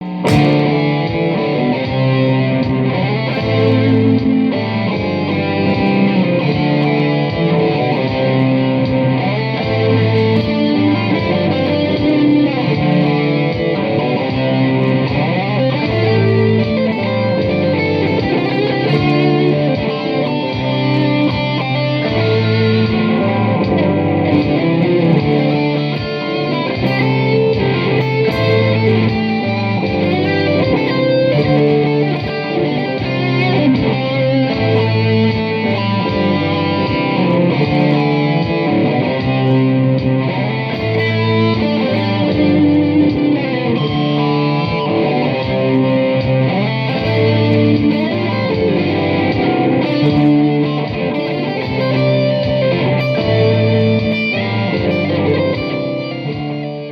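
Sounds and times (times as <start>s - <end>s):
electric guitar: 0.0s - 56.9s
rock band music: 0.0s - 56.9s.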